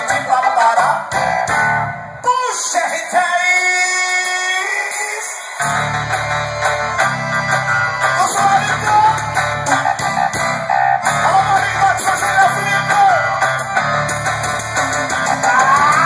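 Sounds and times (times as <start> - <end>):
guitar-led music: 0.0 - 2.2, 5.4 - 16.0
pulsing bass line: 5.6 - 16.0.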